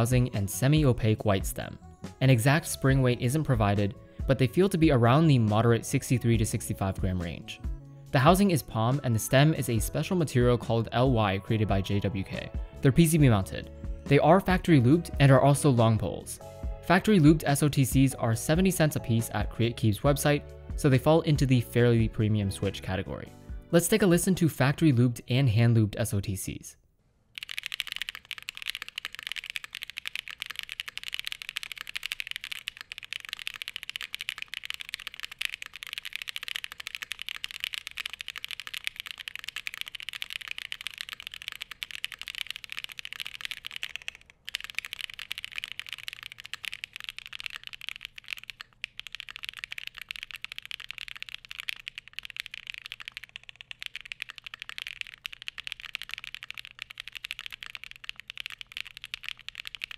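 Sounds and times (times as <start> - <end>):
fast typing on mechanical keyboard: 0.0 - 1.7, 2.6 - 7.4, 27.4 - 59.9.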